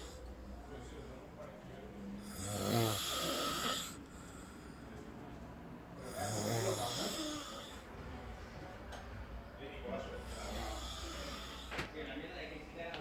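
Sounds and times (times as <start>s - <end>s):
person snoring: 2.2s - 4.0s, 6.0s - 7.8s, 10.2s - 11.7s.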